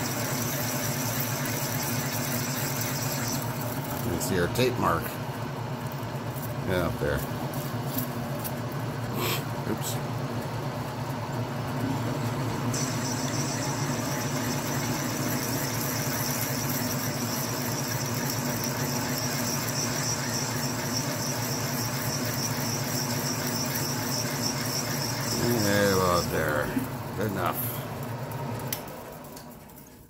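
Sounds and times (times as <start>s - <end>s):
drill bit whining in metal: 12.8s - 26.6s
drill motor humming: 12.8s - 26.7s.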